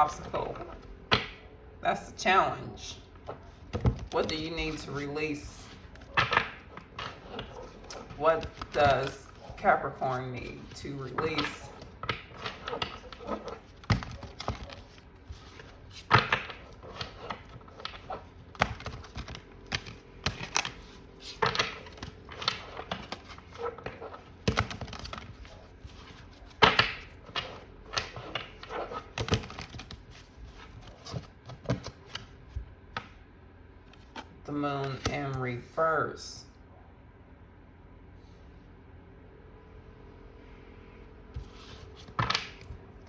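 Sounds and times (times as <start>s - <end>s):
cards being shuffled: 3.1s - 33.2s, 41.4s - 43.0s.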